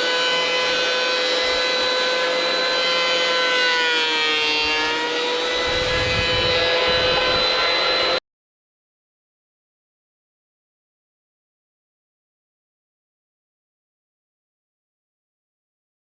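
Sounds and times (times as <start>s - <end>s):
rough low rumble of wood cutting: 0.0s - 8.2s
woodworking machine whining: 0.0s - 8.2s.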